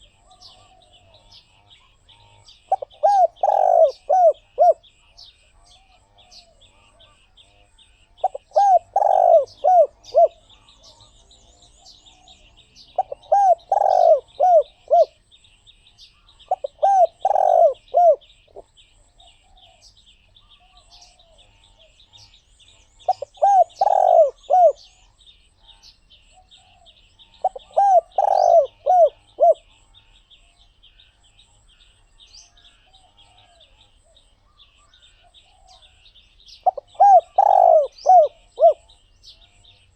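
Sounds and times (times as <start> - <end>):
dove cooing: 0.0 - 5.0, 8.2 - 15.2, 16.2 - 22.3, 23.0 - 25.1, 26.3 - 29.9, 36.6 - 39.7.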